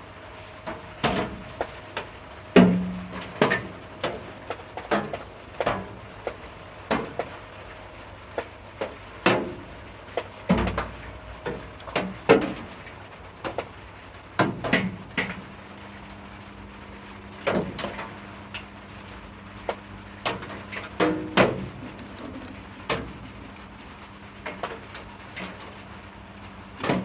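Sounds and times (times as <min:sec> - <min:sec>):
steady low hum: 0:15.5 - 0:27.0
objects knocking and clunking: 0:20.3 - 0:25.8.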